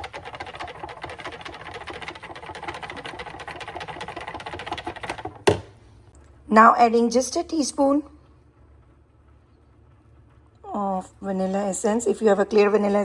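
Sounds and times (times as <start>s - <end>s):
utensil clicking against cup: 0.0s - 5.8s.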